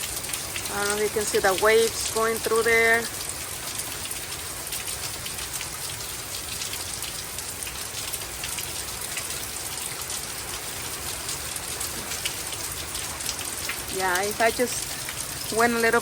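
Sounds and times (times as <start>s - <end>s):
heavy rain pouring: 0.0s - 16.0s.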